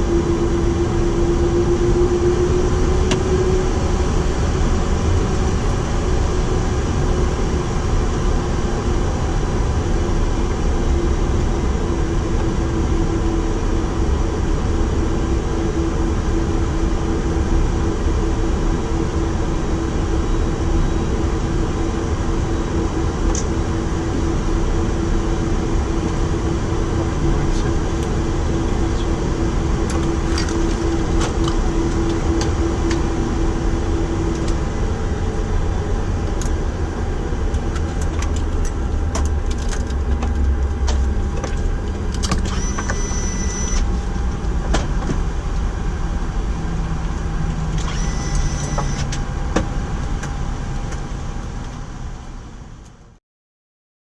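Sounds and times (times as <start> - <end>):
cockpit low rumble: 0.0 - 53.2
short high-pitched tones: 42.5 - 43.8, 47.9 - 49.1.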